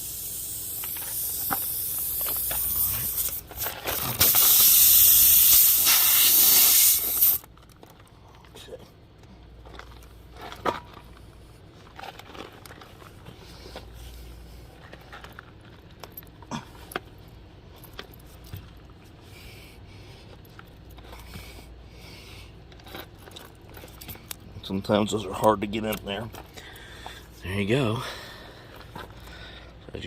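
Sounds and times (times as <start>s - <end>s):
soft air hisses: 0.0s - 3.5s, 4.2s - 7.4s.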